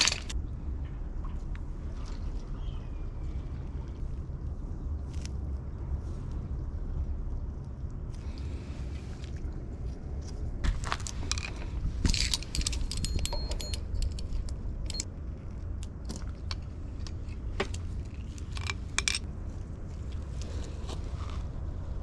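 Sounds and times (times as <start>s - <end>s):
small metal objects clinking: 0.0s - 0.3s, 11.3s - 15.0s
steady low rumble: 0.0s - 22.0s.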